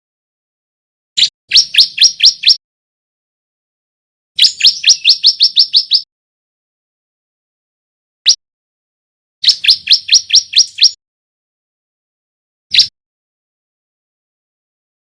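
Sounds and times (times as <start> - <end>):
bird singing rapid sharp notes: 1.2 - 2.6, 4.4 - 6.1, 9.4 - 11.0, 12.7 - 12.9.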